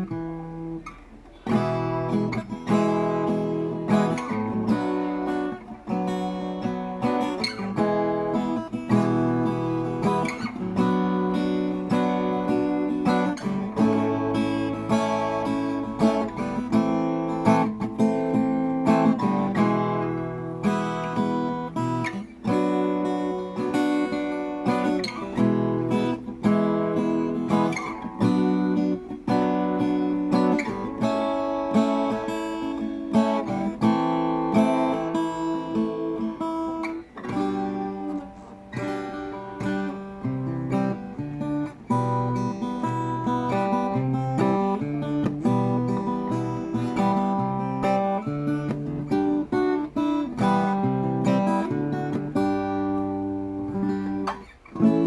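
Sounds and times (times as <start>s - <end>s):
acoustic guitar playing: 0.0s - 55.0s.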